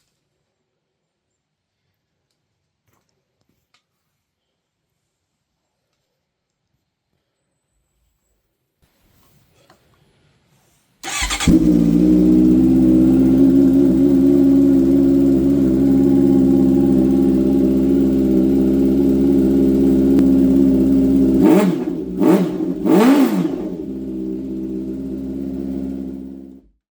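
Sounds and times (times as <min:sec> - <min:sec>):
motorcycle engine idling and revving: 0:11.0 - 0:26.8.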